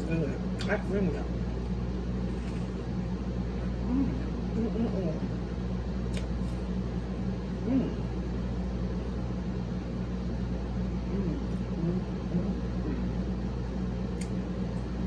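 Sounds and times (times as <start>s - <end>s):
appliance humming: 0.0s - 15.0s
faint murmur: 3.6s - 5.5s, 7.5s - 8.3s, 10.8s - 13.4s.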